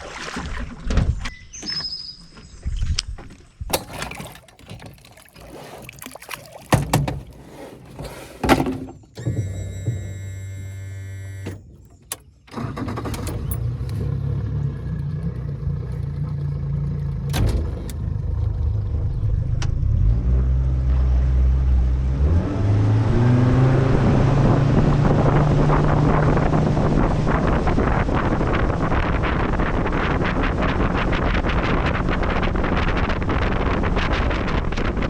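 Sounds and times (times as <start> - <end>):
water rushing: 3.7 - 8.7
boat motor running: 3.7 - 12.4, 13.2 - 35.0
rushing wind: 23.1 - 35.0.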